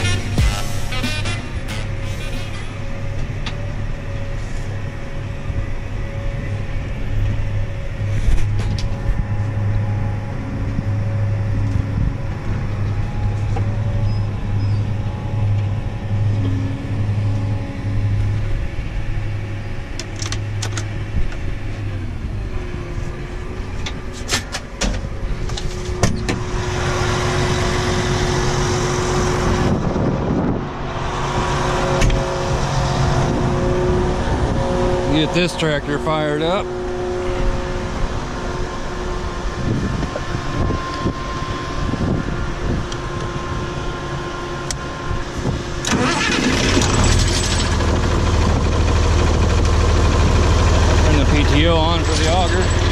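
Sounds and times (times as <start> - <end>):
loud rushing noise: 0.0 - 3.4, 25.9 - 47.2
tractor engine running: 0.0 - 52.9.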